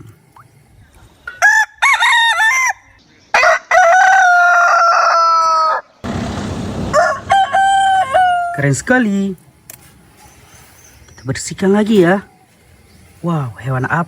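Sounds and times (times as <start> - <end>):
rooster crowing: 1.4 - 6.0, 6.9 - 8.6
rooster clucking: 6.9 - 8.6.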